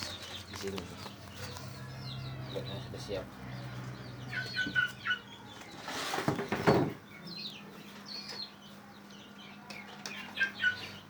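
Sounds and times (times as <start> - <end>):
chicks peeping: 0.0 - 11.0.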